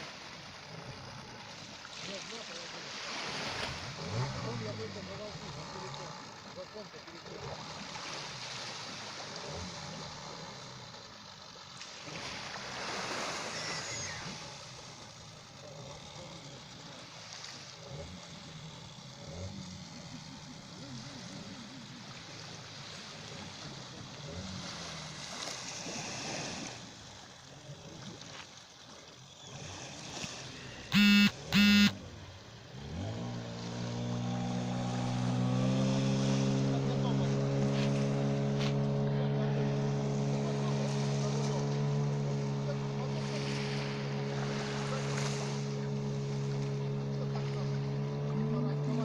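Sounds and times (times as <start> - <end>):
sea surf washing on shore: 0.0 - 15.4, 32.8 - 49.0
faint voices: 0.6 - 8.4, 13.3 - 25.0, 34.7 - 49.0
short high-pitched tones: 30.9 - 32.0.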